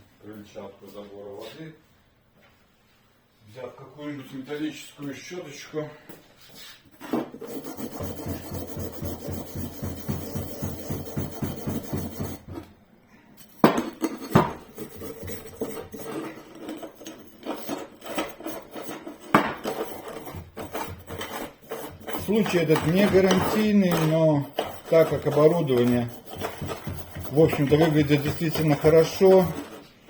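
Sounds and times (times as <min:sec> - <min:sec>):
wire brush scrubbing metal: 0:07.4 - 0:12.5, 0:14.6 - 0:29.9.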